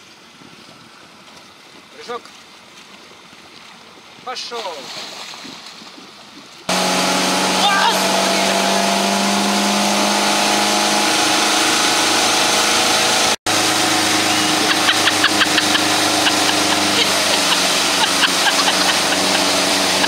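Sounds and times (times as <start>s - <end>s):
rush of wind and water: 0.0s - 20.0s
motorboat engine: 5.5s - 20.0s.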